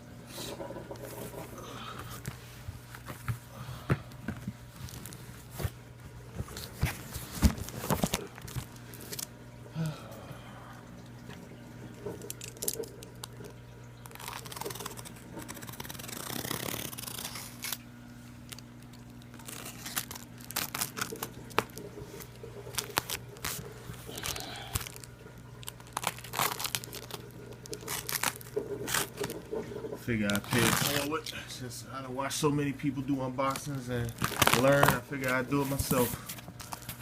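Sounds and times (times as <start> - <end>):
low steady hum: 0.0 - 37.0
packaging tearing and crinkling: 6.6 - 9.3, 12.0 - 29.6, 30.2 - 31.2, 33.5 - 37.0.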